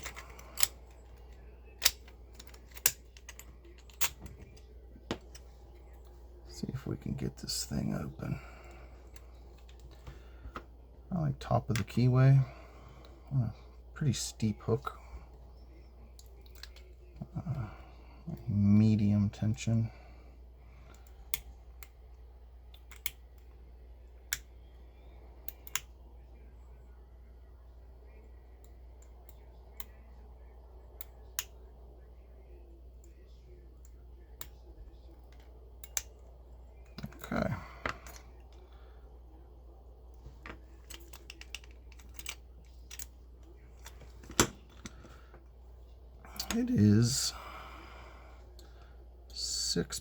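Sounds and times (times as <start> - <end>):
lock pick metallic clicks: 0.0 - 4.4, 22.7 - 23.5, 40.5 - 43.1.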